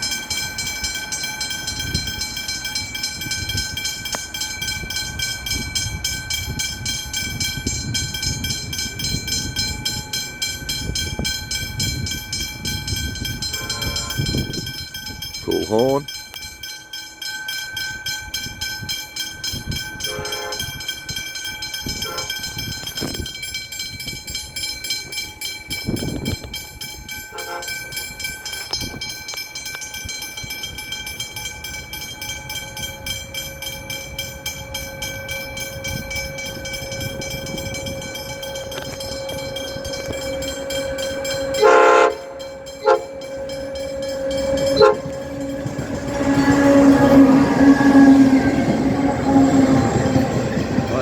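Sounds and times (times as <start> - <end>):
metallic ringing: 0.0 - 51.0
train wheels over rail joints: 0.0 - 51.0
locomotive horn blasts: 13.4 - 14.6, 20.0 - 20.9, 21.9 - 22.6, 27.3 - 28.1, 37.4 - 51.0.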